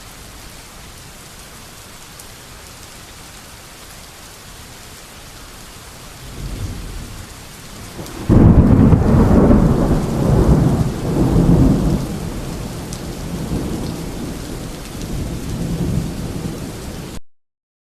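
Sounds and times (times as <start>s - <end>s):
rain falling: 0.0s - 17.2s
loud thunderclap: 6.2s - 7.2s, 7.9s - 14.3s
thunder rumbling: 6.2s - 17.2s.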